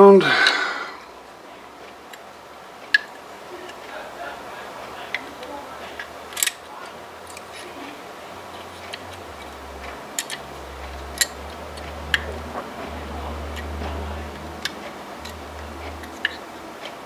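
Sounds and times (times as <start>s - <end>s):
sharp metal clicks: 6.0s - 7.7s, 8.6s - 12.6s.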